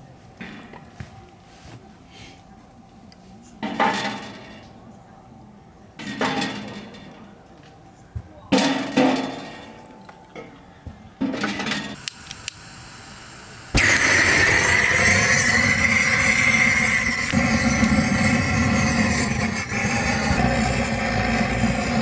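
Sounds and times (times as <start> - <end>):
loud steady hiss with whistle: 12.0 - 22.0.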